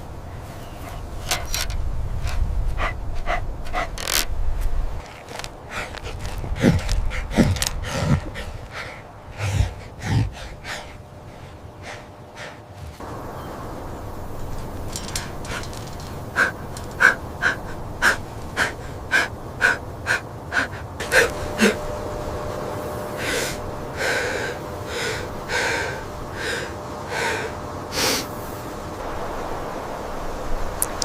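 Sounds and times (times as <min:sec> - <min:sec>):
dog gasping: 0:02.2 - 0:04.2, 0:05.3 - 0:13.0, 0:14.9 - 0:22.2.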